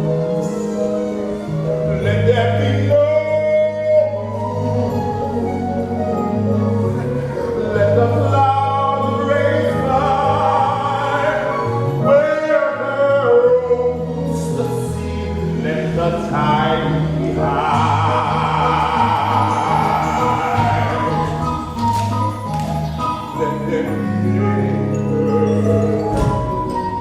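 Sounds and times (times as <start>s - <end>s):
ensemble playing: 0.0s - 27.0s
person singing show tune: 7.4s - 22.2s
bass line: 13.0s - 27.0s.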